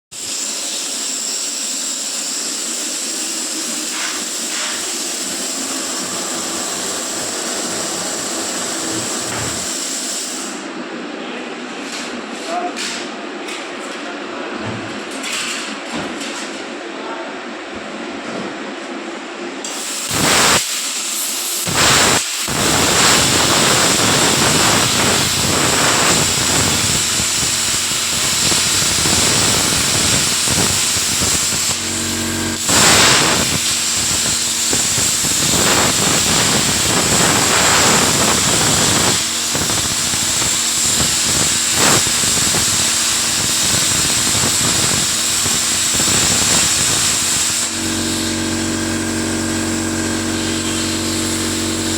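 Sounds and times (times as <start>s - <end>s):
plasma cutter hissing and crackling: 0.1s - 10.7s, 19.6s - 51.9s
high whine: 21.6s - 51.9s.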